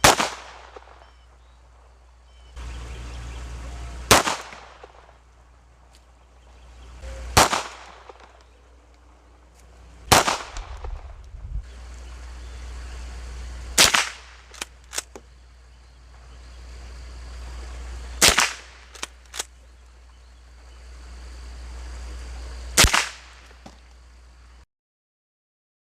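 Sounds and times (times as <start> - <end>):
gunshots: 0.0 - 1.2, 4.1 - 5.2, 7.2 - 8.5, 10.1 - 11.2, 13.7 - 15.2, 18.2 - 19.5, 22.8 - 23.7
steady low rumble: 0.0 - 24.6.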